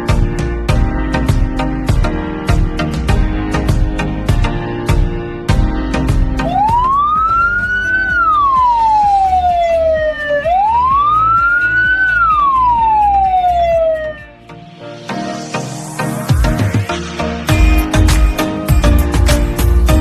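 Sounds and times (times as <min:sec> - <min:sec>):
background music: 0:00.0 - 0:20.0
ambulance siren wailing: 0:06.4 - 0:14.3.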